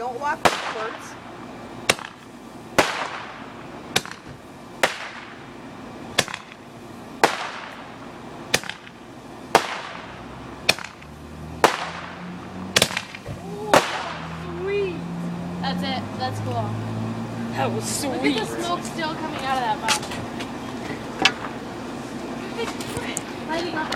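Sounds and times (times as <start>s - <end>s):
firework bangs with hiss: 0.3s - 1.1s, 1.9s - 5.5s, 7.2s - 11.0s, 11.6s - 12.2s, 12.8s - 14.3s.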